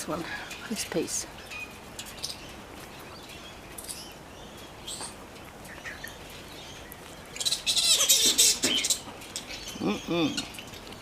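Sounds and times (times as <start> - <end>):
flying-foxes chattering squeals: 7.4 - 9.0.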